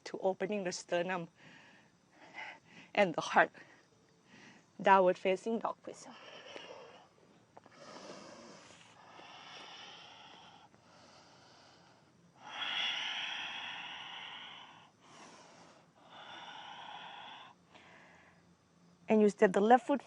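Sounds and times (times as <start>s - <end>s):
person breathing deeply: 6.1s - 18.5s.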